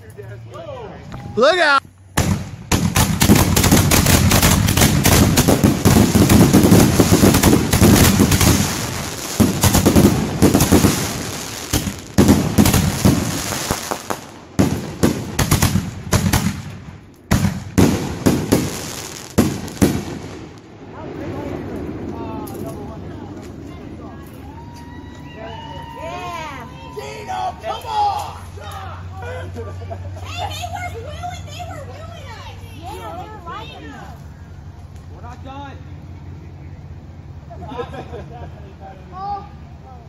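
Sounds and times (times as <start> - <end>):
fireworks bangs and crackles: 1.6 - 25.9.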